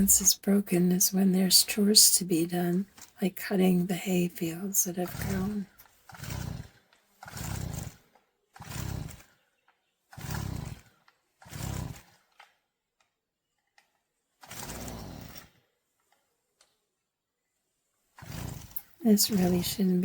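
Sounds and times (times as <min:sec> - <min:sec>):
small engine revving: 0:04.9 - 0:09.4, 0:10.1 - 0:12.3, 0:14.4 - 0:15.6, 0:18.2 - 0:20.0.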